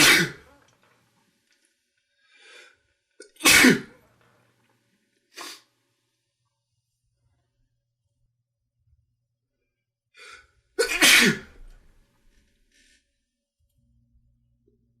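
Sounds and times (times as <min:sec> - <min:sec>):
man sneezing hard: 0:00.0 - 0:00.5, 0:03.2 - 0:03.9, 0:10.8 - 0:11.6
faint breaths: 0:02.0 - 0:03.0, 0:11.7 - 0:13.2.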